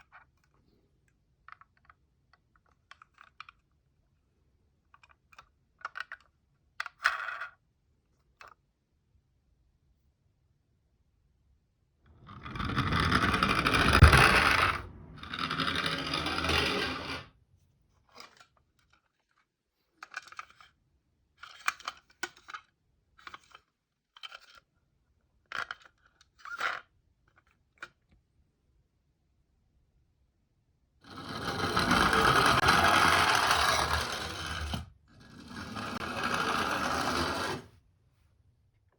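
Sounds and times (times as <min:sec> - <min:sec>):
toys scraping on hard surface: 0:12.1 - 0:17.3, 0:31.1 - 0:37.8
light clicks of toys: 0:18.1 - 0:20.8.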